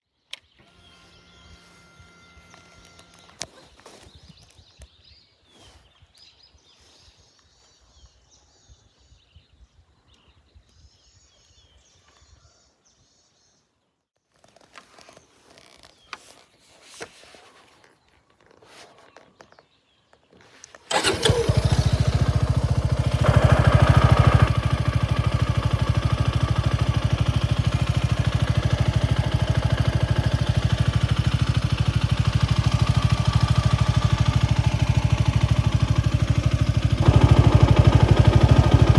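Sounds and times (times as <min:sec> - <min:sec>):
motorcycle engine starting and idling: 0:20.9 - 0:38.9.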